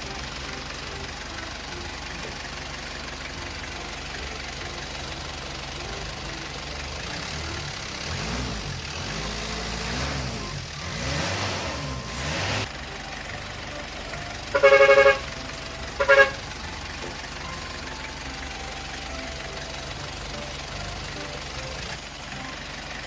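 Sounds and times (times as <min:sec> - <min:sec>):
simulated truck engine revving: 0:00.0 - 0:23.0
short horn honks: 0:14.4 - 0:16.7.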